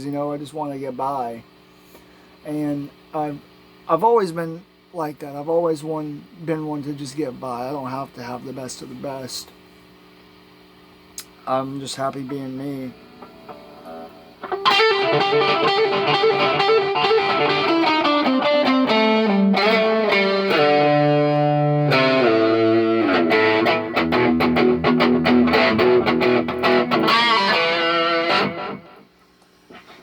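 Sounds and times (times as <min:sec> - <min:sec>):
distorted electric guitar riff: 0:12.4 - 0:29.1.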